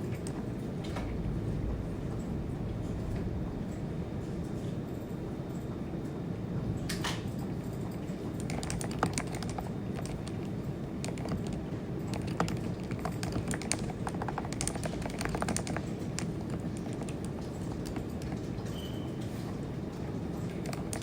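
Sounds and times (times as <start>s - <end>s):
mechanical keyboard typing: 7.6s - 19.0s, 20.4s - 21.0s.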